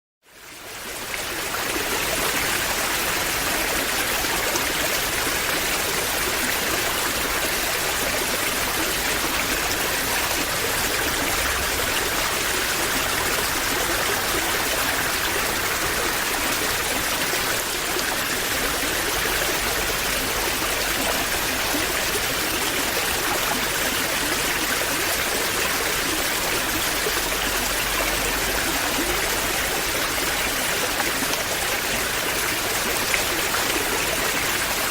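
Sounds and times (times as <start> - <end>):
waterfall rushing: 1.4 - 34.9.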